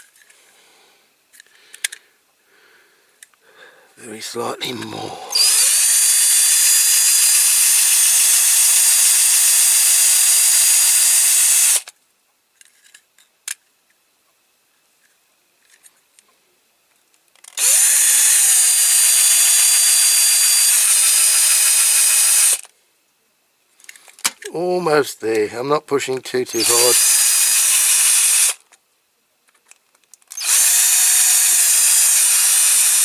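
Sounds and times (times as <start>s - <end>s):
faint handling clicks: 1.3s - 2.0s
small electric drill running: 5.3s - 11.9s, 17.6s - 22.7s, 26.5s - 28.6s, 30.3s - 33.0s.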